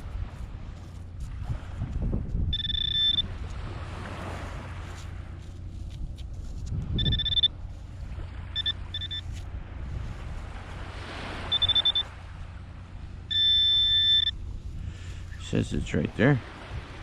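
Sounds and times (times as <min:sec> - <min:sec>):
wind rumble on microphone: 0:00.0 - 0:17.0
pinpointer beeping: 0:02.5 - 0:03.3, 0:07.0 - 0:07.6, 0:08.6 - 0:09.3, 0:11.5 - 0:12.1, 0:13.3 - 0:14.4.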